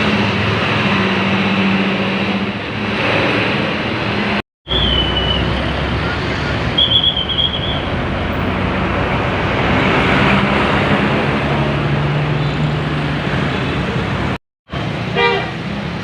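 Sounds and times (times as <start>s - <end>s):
road traffic: 0.0s - 16.0s
heavy vehicle engine passing: 7.8s - 16.0s.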